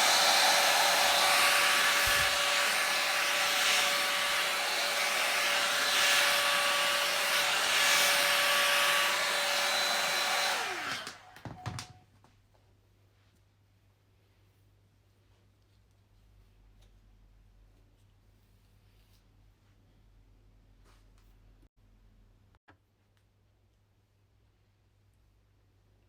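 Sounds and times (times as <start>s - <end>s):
hairdryer brush blowing: 0.0s - 12.0s.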